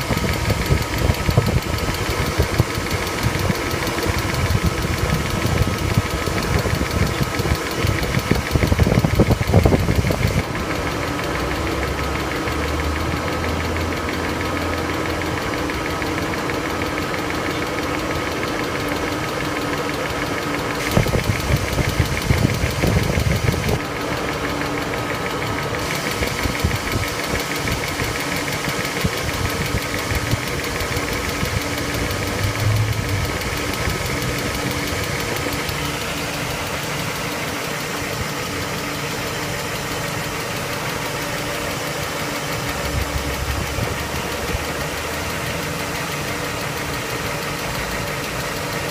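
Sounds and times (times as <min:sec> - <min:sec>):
engine running: 0:00.0 - 0:48.9
valve lifters ticking: 0:00.0 - 0:48.9
low rumbling: 0:29.5 - 0:36.6.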